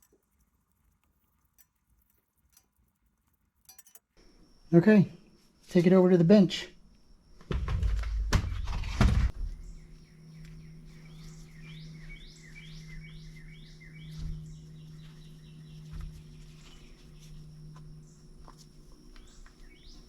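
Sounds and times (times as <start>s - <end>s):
steady low hum: 4.2s - 20.0s
loud clattering and rustling: 7.4s - 9.5s
dull thumps: 7.4s - 10.6s
bird chirping: 9.3s - 20.0s.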